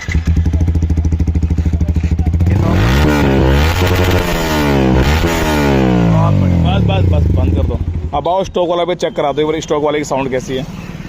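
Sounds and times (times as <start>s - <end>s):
motorcycle engine idling and revving: 0.0s - 11.0s.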